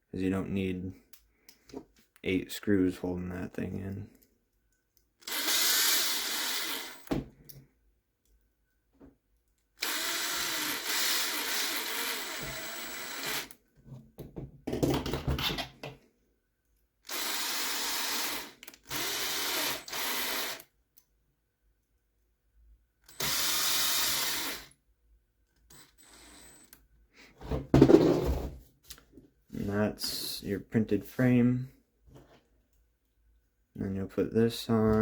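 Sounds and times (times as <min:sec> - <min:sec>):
power driver driving screws: 0:05.2 - 0:07.2, 0:09.8 - 0:13.6, 0:17.0 - 0:20.7, 0:23.0 - 0:24.7.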